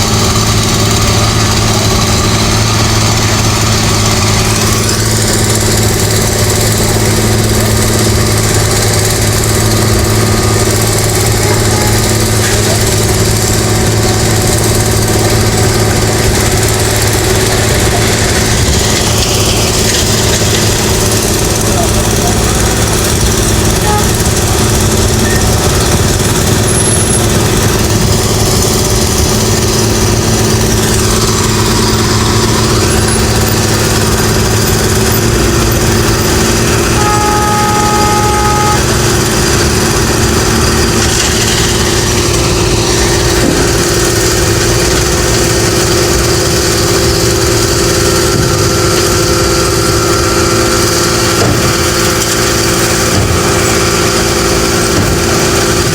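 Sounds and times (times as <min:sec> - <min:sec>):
construction machinery engine running: 0:00.0 - 0:55.9
short two-note tone: 0:36.9 - 0:39.2.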